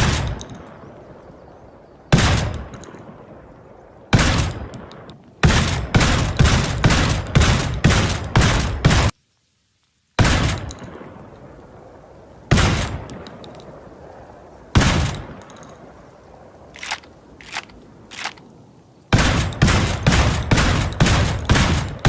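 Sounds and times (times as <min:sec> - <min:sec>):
rapid shotgun fire: 0:02.1 - 0:02.6, 0:04.1 - 0:04.7, 0:05.4 - 0:09.1, 0:10.2 - 0:10.7, 0:12.5 - 0:13.0, 0:19.1 - 0:22.0.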